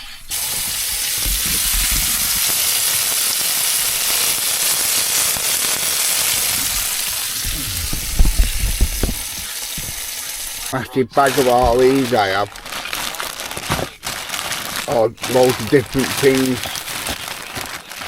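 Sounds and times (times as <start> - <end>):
burger patties sizzling in a pan: 0.0 - 18.0
low knocks: 6.8 - 10.0.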